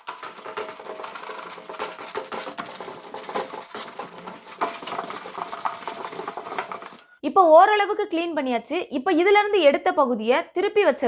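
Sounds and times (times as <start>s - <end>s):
scrubbing and scraping dirt: 0.0s - 7.0s.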